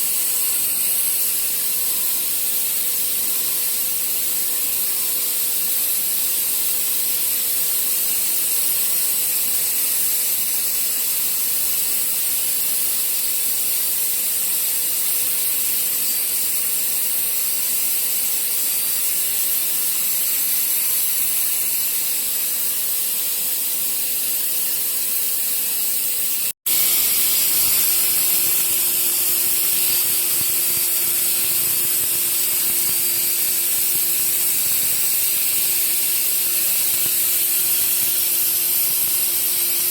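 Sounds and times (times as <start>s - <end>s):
machine whine: 14.2s - 39.9s
router hissing: 15.1s - 39.9s.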